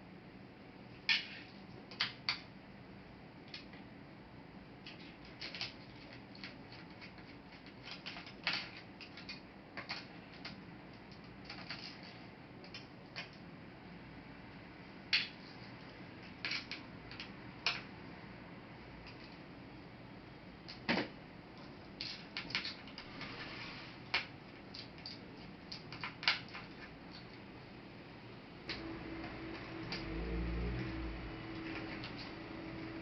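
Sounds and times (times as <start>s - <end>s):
faint background hum: 0.0s - 33.0s
clicks and taps of plastic parts: 24.1s - 27.4s.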